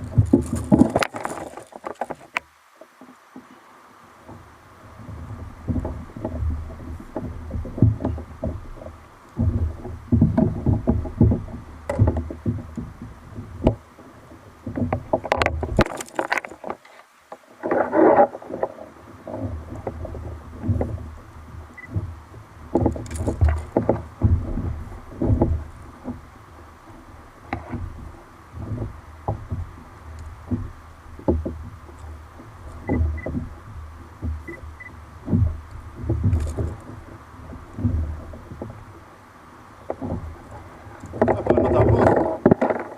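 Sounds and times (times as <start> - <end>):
water slapping against hull: 0.0 - 3.6, 4.2 - 42.9.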